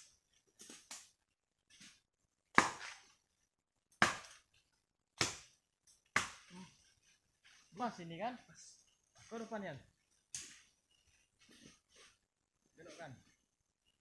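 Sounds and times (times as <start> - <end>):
machete chopping hard wood: 2.5 - 3.0, 4.0 - 4.4, 5.2 - 5.5, 6.2 - 6.5.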